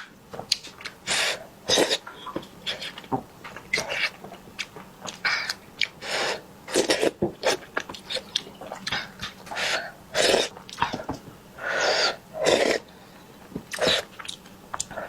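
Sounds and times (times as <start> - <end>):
person slurping soup: 6.0 - 11.0, 11.6 - 12.9, 13.7 - 14.2.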